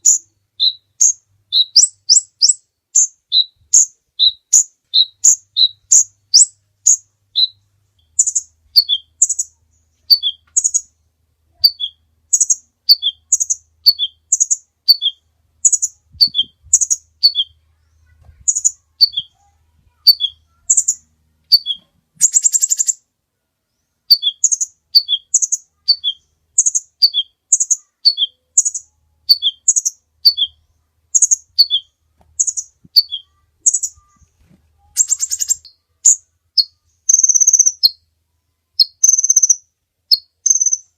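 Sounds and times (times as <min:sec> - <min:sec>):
bird singing high chirps: 0:00.0 - 0:23.0, 0:23.7 - 0:38.1, 0:38.8 - 0:40.9.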